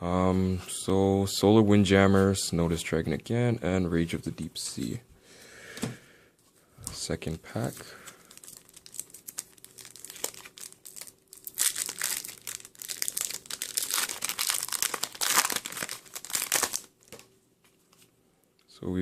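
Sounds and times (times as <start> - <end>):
foil wrapper crinkling: 7.6 - 18.1.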